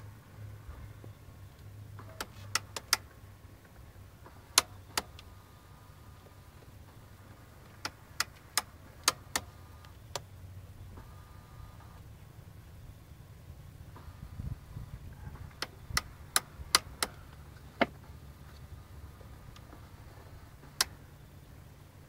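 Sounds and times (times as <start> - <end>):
steady low hum: 0.0 - 22.0
sharp clicking behind dashboard: 1.6 - 5.4, 6.2 - 10.3, 13.9 - 14.4, 15.2 - 21.1.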